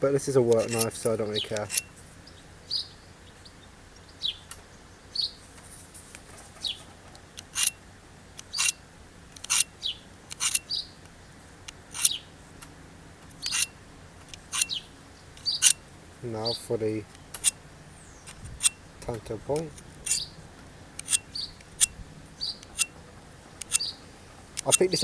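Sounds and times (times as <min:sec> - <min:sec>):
knife rasping through sharpener: 0:00.6 - 0:00.9, 0:01.7 - 0:01.9, 0:07.5 - 0:07.8, 0:08.6 - 0:08.8, 0:09.4 - 0:09.7, 0:10.3 - 0:10.6, 0:11.9 - 0:12.2, 0:13.4 - 0:13.7, 0:14.4 - 0:14.8, 0:20.0 - 0:20.2, 0:21.0 - 0:21.9, 0:22.7 - 0:22.9.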